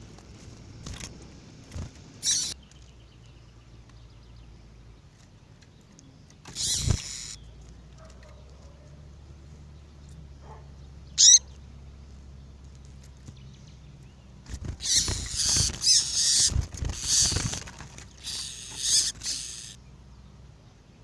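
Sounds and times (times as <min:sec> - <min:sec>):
bird high chirp: 0:02.2 - 0:04.7, 0:05.7 - 0:07.7, 0:09.8 - 0:11.7, 0:13.2 - 0:17.6, 0:18.2 - 0:19.9.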